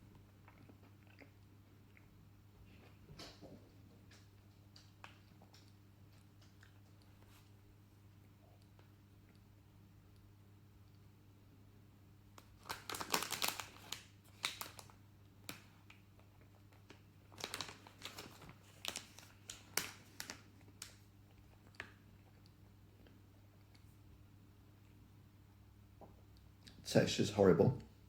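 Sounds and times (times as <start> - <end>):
plastic packaging crinkling: 12.4 - 16.0, 16.8 - 21.0.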